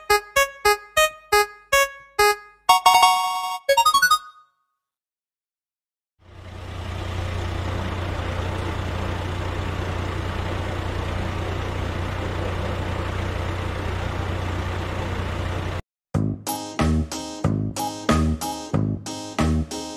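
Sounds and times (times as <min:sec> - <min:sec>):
heavy truck engine idling: 0:06.2 - 0:15.8.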